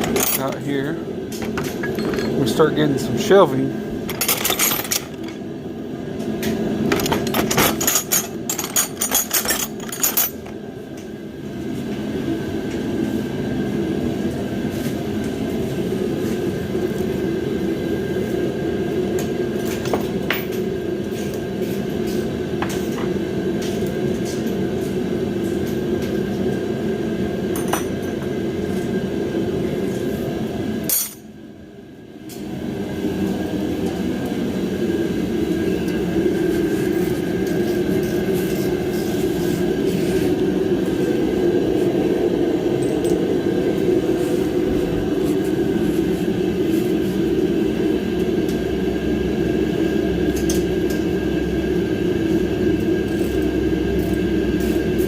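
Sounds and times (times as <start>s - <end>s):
metal tools clinking: 0.0s - 0.6s, 1.4s - 2.5s, 4.1s - 5.4s, 7.0s - 10.5s
steady droning hum: 0.0s - 55.0s.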